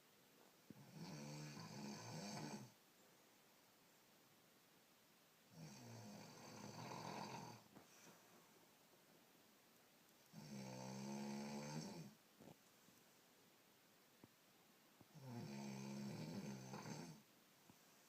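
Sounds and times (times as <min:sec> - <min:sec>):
person snoring: 0:00.8 - 0:02.8, 0:05.6 - 0:07.7, 0:10.3 - 0:12.2, 0:15.1 - 0:17.2.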